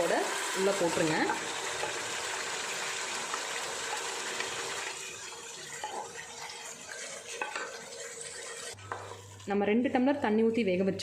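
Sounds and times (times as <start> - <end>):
liquid pouring and splashing: 1.4 - 8.8.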